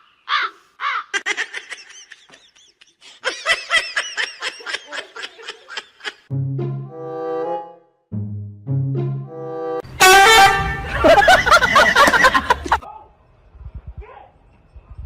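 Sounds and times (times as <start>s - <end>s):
high-pitched laughter: 0.8s - 6.3s, 10.7s - 12.9s
low horn-like tone: 9.2s - 10.9s.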